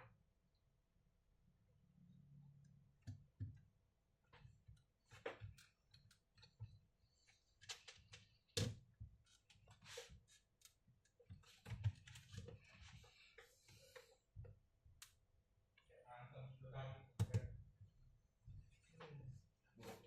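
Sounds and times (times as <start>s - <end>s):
hands handling plastic laptop case: 7.3s - 14.2s.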